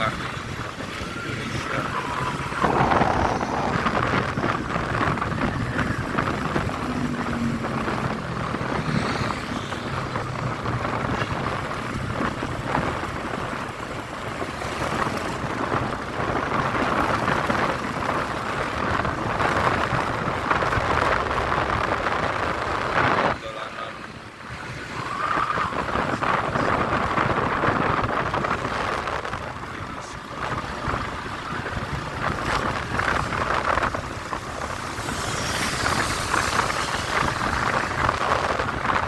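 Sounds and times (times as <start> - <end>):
traffic on wet road: 0.0 - 39.0.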